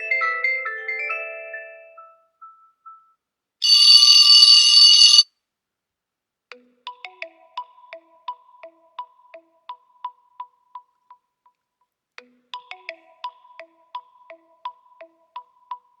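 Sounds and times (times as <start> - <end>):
plinking ringtone tune: 0.0 - 5.2
bright bell-like ring: 3.6 - 5.2.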